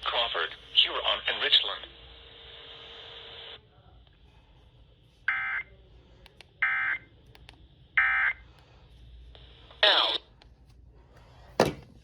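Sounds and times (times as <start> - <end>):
radio hiss: 0.0 - 3.8.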